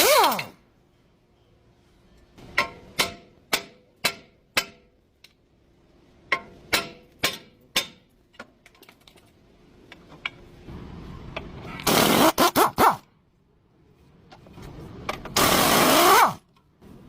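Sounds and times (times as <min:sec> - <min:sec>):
hammer striking metal: 0:02.4 - 0:05.0, 0:06.3 - 0:08.1.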